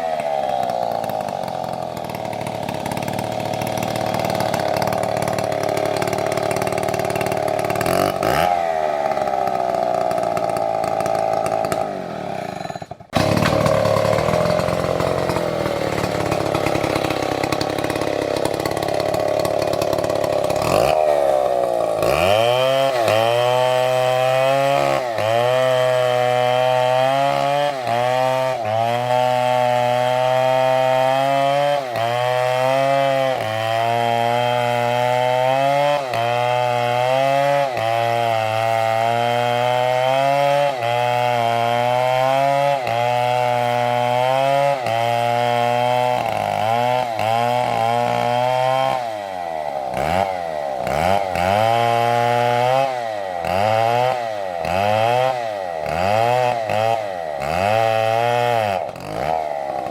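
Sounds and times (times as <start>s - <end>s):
chainsaw cutting at high revs: 0.0s - 59.9s.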